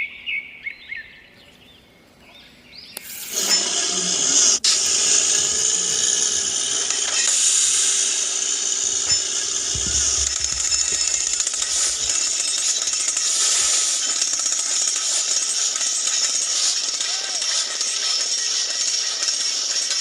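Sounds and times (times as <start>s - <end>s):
small electric motor whirring: 3.0s - 20.0s.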